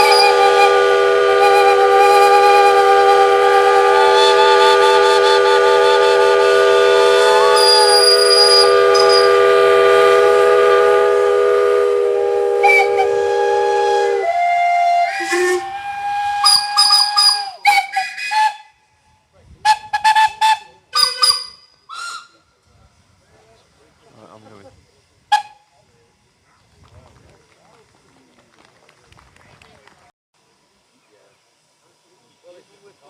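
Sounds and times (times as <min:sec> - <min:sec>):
steam locomotive whistles: 0:00.0 - 0:23.0, 0:25.0 - 0:26.4
short whistle toots: 0:07.1 - 0:09.5, 0:12.5 - 0:18.7, 0:19.7 - 0:22.4.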